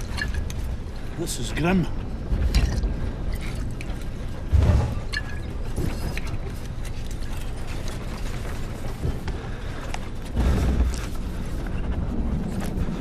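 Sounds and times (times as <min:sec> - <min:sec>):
airliner cabin rumble: 0:00.0 - 0:13.0
heavy bump: 0:04.4 - 0:06.0, 0:10.3 - 0:13.0.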